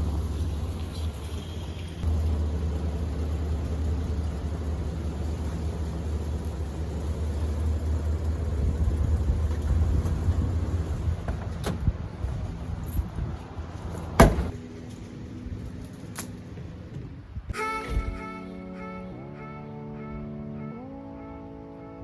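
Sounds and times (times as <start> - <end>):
vehicle engine rumbling: 0.0 - 22.0
music: 17.6 - 22.0.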